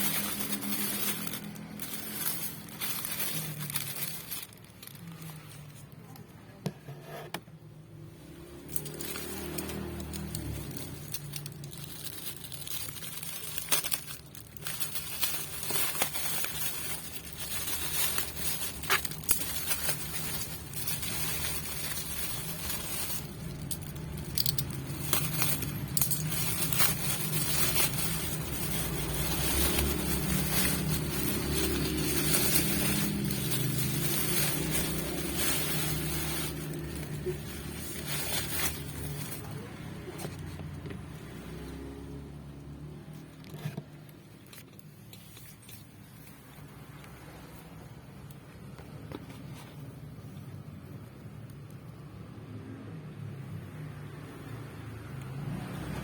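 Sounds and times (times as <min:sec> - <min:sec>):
packaging crinkling and rustling: 0:00.0 - 0:06.4, 0:08.3 - 0:41.9, 0:43.2 - 0:47.2.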